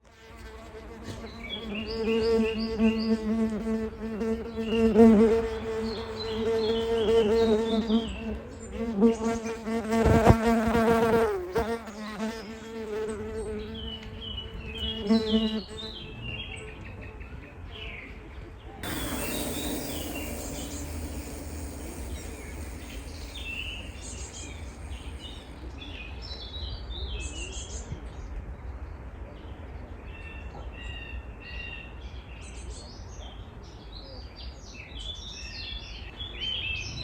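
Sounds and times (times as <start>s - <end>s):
insect buzzing: 18.8s - 25.7s
bird chirping: 18.8s - 25.8s.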